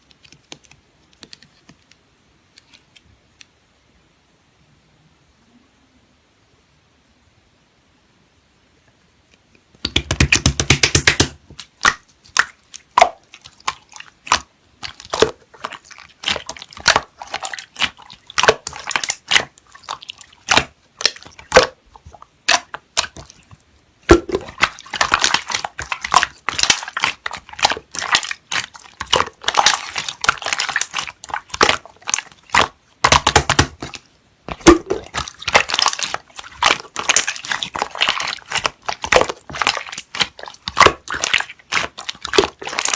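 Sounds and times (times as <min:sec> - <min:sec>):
slime squished by hand: 0:09.8 - 0:42.9.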